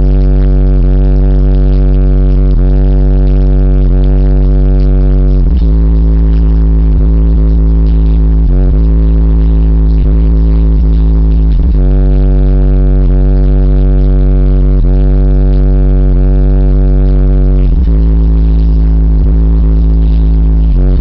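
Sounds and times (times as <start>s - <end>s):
bass-heavy electronic music: 0.0s - 21.0s
long held bass note: 0.0s - 21.0s.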